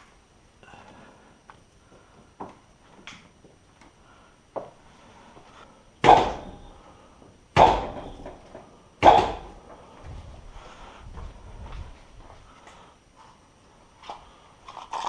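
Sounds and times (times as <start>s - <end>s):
dog barking echoing in room: 9.0s - 9.6s.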